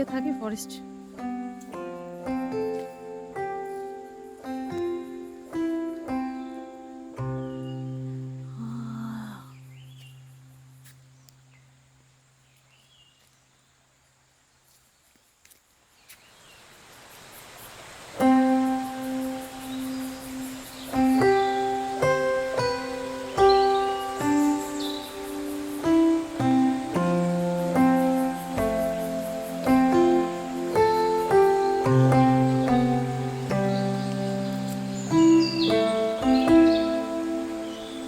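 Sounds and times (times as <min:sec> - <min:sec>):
plucked or keyboard notes: 0:00.0 - 0:10.1, 0:18.2 - 0:38.0
sustained piano-like chord: 0:18.3 - 0:38.0.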